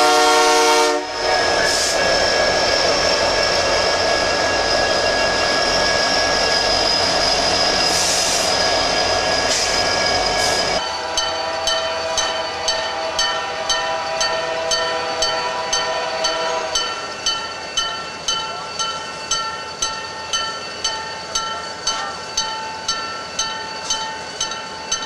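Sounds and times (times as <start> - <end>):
locomotive air horn chord: 0.0 - 1.2, 10.8 - 17.0
railroad crossing bell ringing: 0.0 - 25.0.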